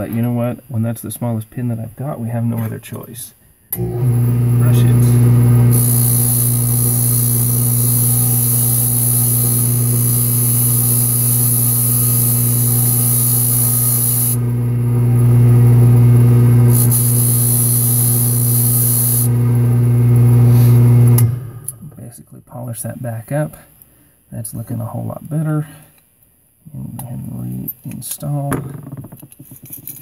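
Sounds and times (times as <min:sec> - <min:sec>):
wire brush wheel motor humming: 0:03.8 - 0:21.8.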